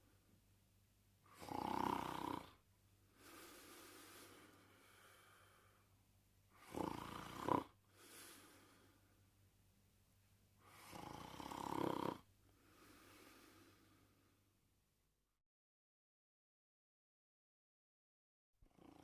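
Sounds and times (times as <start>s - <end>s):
quiet breaths: 0.0s - 15.0s
loud snores: 1.3s - 2.6s, 6.5s - 8.7s, 10.6s - 13.9s, 18.6s - 19.0s.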